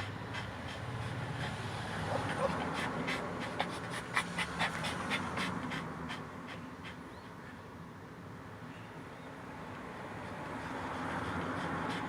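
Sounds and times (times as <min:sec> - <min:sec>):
dog panting quickly: 0:00.0 - 0:07.4, 0:10.3 - 0:12.0.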